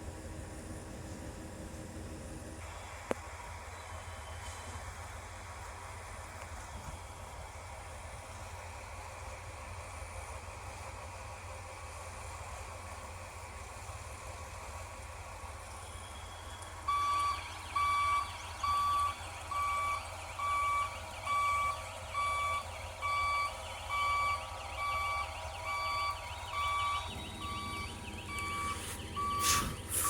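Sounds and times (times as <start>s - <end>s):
low engine running: 0.0s - 30.0s
machine warning beeper: 16.0s - 30.0s.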